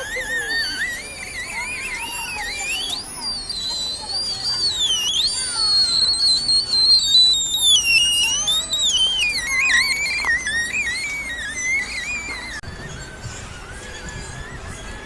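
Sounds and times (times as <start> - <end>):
electronic bird-like whistling warble: 0.0 - 15.0.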